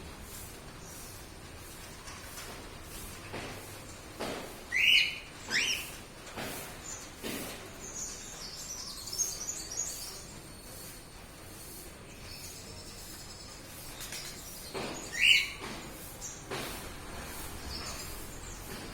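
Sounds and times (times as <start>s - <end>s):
bird chirping and twittering: 4.7s - 6.0s, 7.7s - 16.6s, 17.4s - 18.9s.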